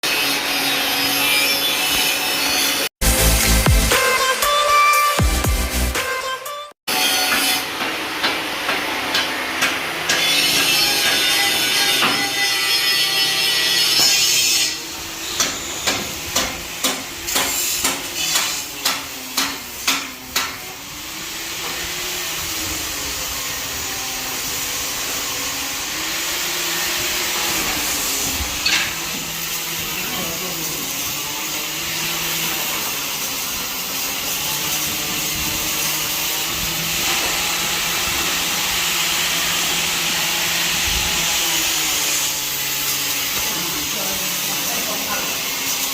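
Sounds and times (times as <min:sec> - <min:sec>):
arc welding crackle: 0:20.8 - 0:40.0, 0:40.8 - 0:45.9.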